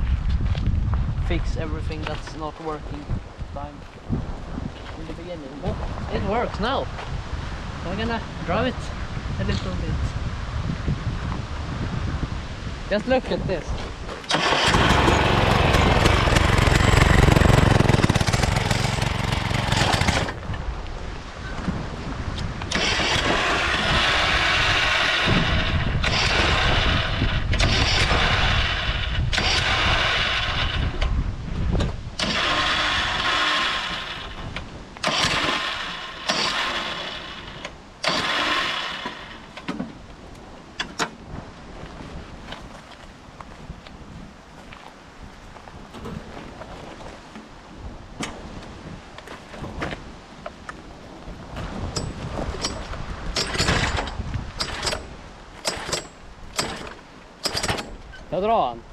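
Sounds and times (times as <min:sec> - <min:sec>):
small petrol engine revving: 0:14.3 - 0:20.4, 0:22.7 - 0:31.1, 0:32.2 - 0:39.6.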